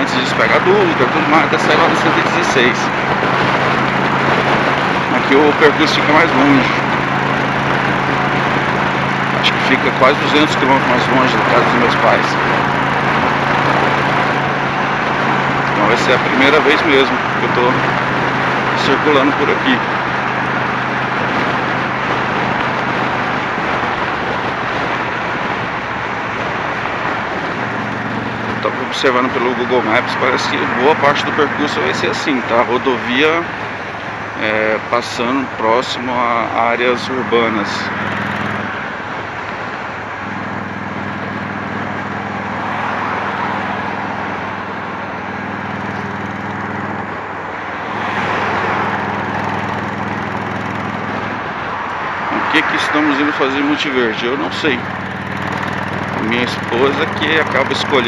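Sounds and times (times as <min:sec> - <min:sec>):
wind rush over microphone: 0:00.0 - 0:35.2
motorcycle engine drone: 0:00.0 - 0:58.0.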